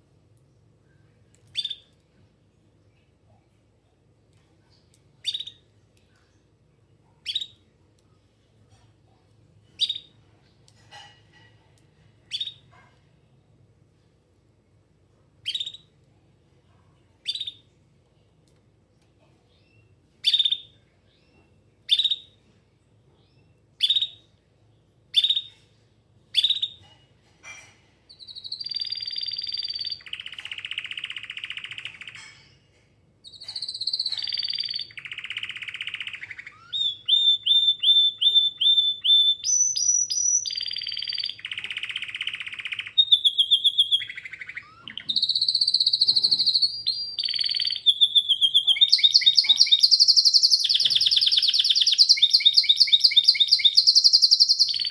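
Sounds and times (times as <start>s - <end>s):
canary singing: 1.4s - 2.0s, 5.2s - 5.6s, 7.2s - 7.6s, 9.8s - 10.2s, 12.3s - 12.8s, 15.4s - 15.9s, 17.2s - 17.6s, 19.6s - 21.3s, 25.1s - 25.6s, 26.3s - 26.9s, 28.1s - 32.5s, 33.2s - 54.9s.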